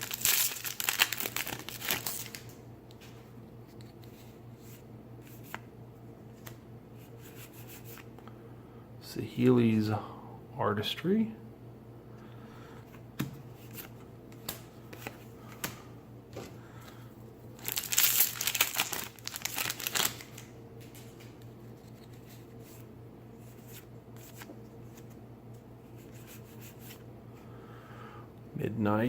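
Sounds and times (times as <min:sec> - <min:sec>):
foil wrapper tearing and crinkling: 0:00.0 - 0:02.6, 0:17.6 - 0:20.5
cards clicking and rustling: 0:00.0 - 0:05.6, 0:17.6 - 0:22.8.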